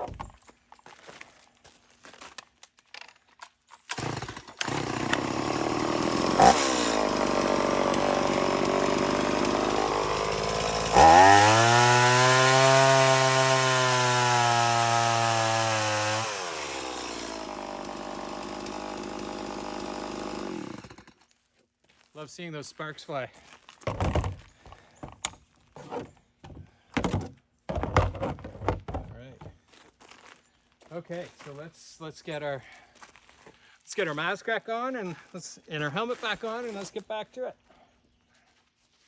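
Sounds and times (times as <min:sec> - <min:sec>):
chainsaw running and revving: 0:03.9 - 0:21.1.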